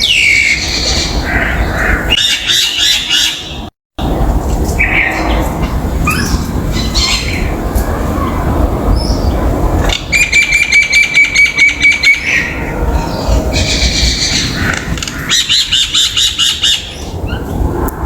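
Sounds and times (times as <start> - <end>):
bird chattering calls: 9.0 - 17.5.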